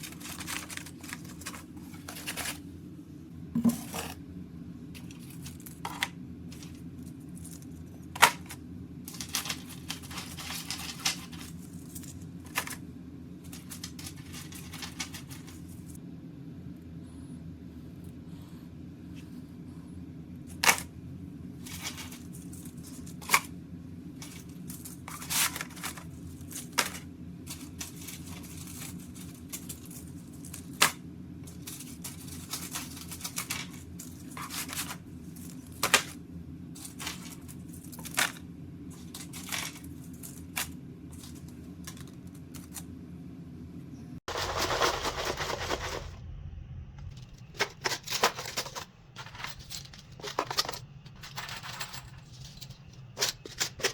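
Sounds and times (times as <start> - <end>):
packaging rustling: 0.0 - 2.7, 5.0 - 12.8, 13.5 - 15.9, 44.3 - 46.1
steady low hum: 0.0 - 53.9.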